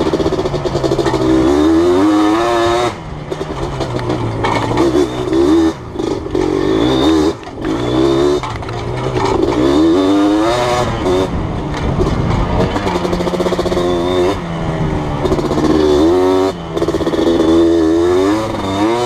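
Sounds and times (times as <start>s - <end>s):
two-stroke engine revving: 0.0s - 19.0s.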